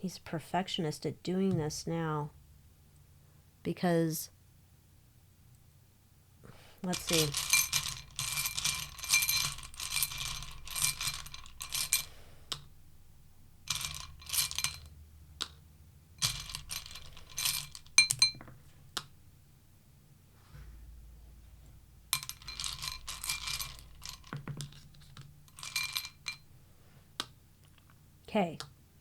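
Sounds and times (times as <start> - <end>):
light metallic clinking: 6.8 - 15.0, 16.2 - 19.1, 22.1 - 26.6.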